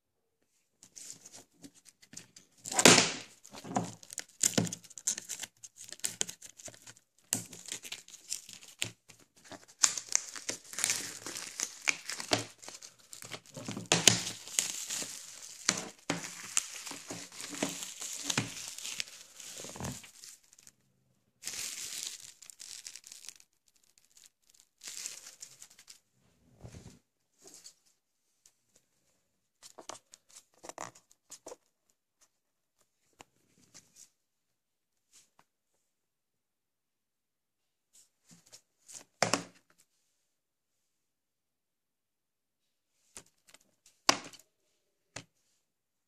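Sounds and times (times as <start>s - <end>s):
packaging crinkling and tearing: 2.5s - 20.7s, 21.4s - 26.0s.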